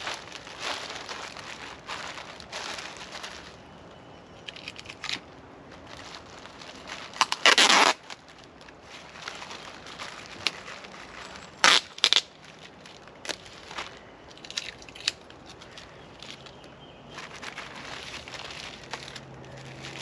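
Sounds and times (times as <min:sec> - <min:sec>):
packaging crinkling and rustling: 0:00.0 - 0:03.8, 0:04.4 - 0:20.0.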